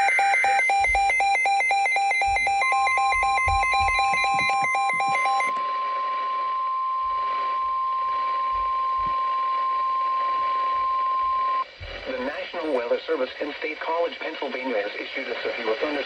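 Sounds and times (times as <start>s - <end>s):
rapid two-pitch alert beeping: 0.0s - 5.5s
steady high alarm tone: 0.0s - 11.6s.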